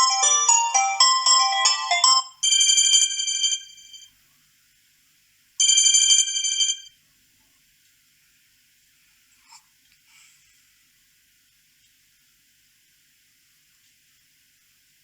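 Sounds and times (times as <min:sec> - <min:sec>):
bright chiming tone: 0:00.0 - 0:02.5
phone ringtone melodic run: 0:00.0 - 0:04.0, 0:05.6 - 0:06.9.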